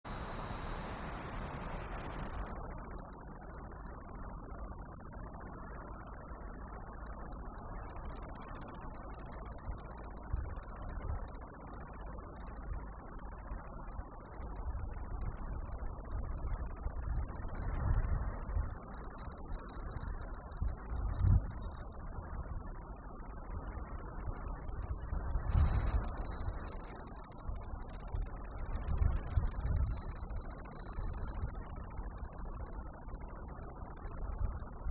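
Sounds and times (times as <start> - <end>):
cicada buzzing: 0.1 - 34.9.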